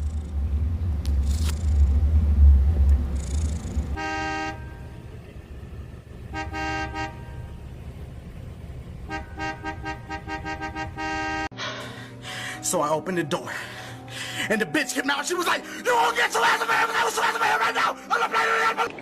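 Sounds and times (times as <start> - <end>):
low rumble: 0.0 - 11.6
car horn honking: 4.0 - 5.5, 6.2 - 7.9, 9.0 - 11.5.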